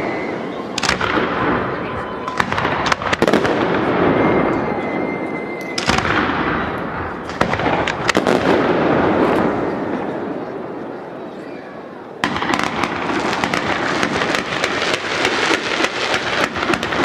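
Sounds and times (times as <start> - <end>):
firework crackling: 0.0 - 10.4, 12.2 - 17.0
thin high tone: 4.1 - 7.2.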